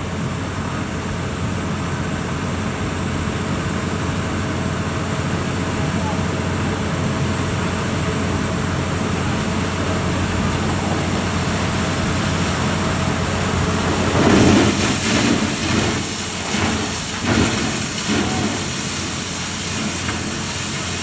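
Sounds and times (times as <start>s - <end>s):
drilling rig engine running: 0.0s - 21.0s
hissing rush of water and air: 0.0s - 21.0s.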